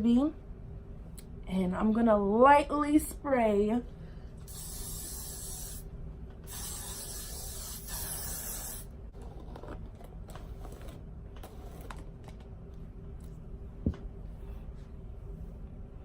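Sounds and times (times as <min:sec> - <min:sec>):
hairspray hissing: 0:04.5 - 0:05.8, 0:06.5 - 0:08.9.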